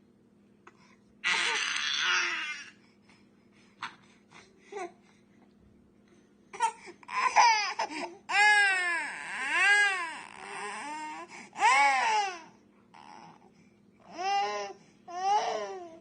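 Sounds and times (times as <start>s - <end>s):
infant crying: 1.2s - 2.8s, 6.6s - 13.4s, 14.1s - 16.0s.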